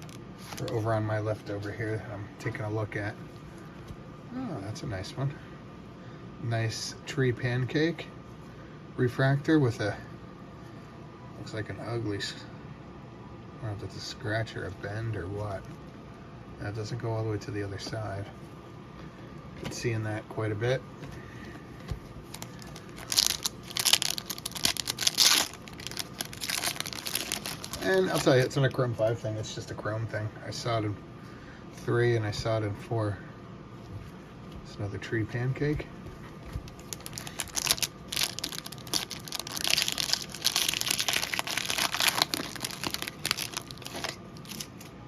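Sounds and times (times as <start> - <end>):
foil wrapper crinkling and tearing: 22.2 - 28.6, 36.7 - 44.9.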